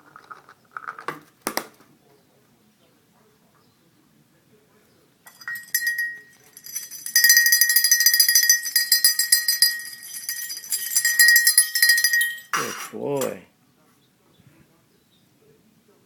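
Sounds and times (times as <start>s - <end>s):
bell ringing rapidly: 5.3s - 12.6s.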